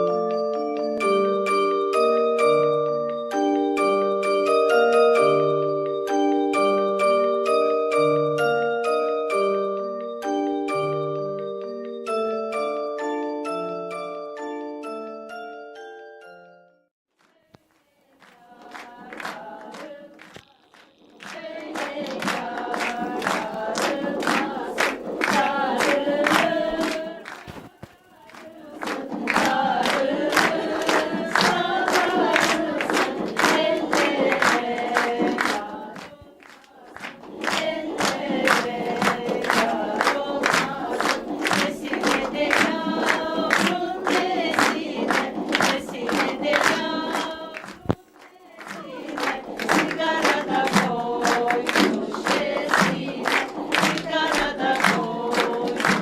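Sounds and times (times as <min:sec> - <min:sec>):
group singing over percussive beat: 0:17.9 - 0:56.0.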